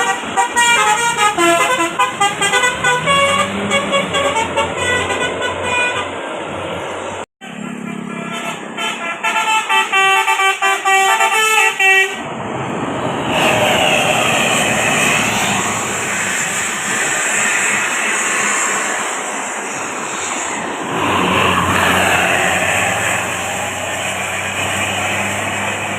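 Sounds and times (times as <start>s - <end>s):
musical air horn tune: 0.0s - 6.2s, 7.4s - 12.2s
vehicle noise rushing: 0.0s - 9.9s, 11.1s - 25.9s.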